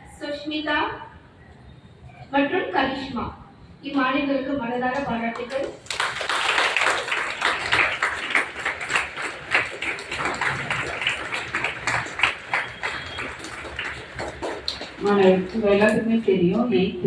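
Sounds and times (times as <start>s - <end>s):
audience applauding: 5.8s - 16.2s.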